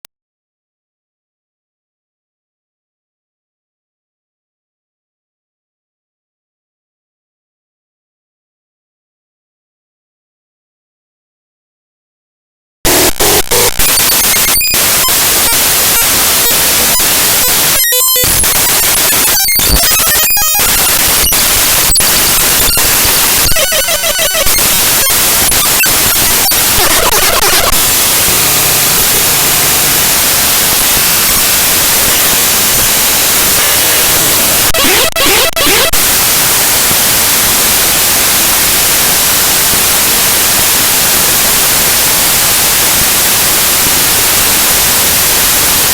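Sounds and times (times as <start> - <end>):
harsh digital static: 12.9 - 45.9
buzzy warbling tone fragments: 16.8 - 36.0.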